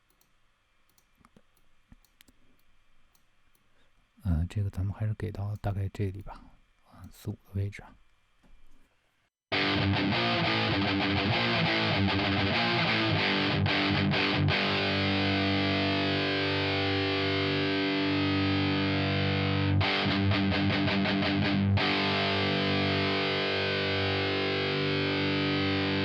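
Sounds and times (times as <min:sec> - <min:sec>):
distorted electric guitar: 0:09.5 - 0:26.0.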